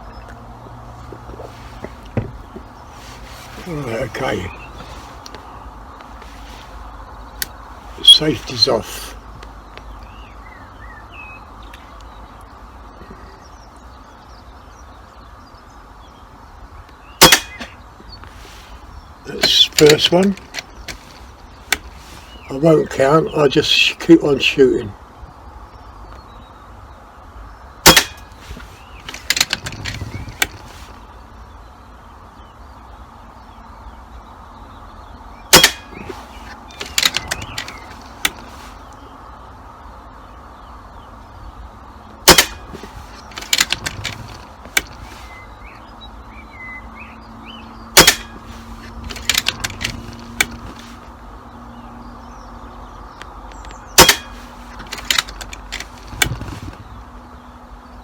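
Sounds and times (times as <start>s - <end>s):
air rifle shots: 17.2s - 17.8s, 27.8s - 31.0s, 35.5s - 38.6s, 42.2s - 45.4s, 48.0s - 50.8s, 53.9s - 56.6s.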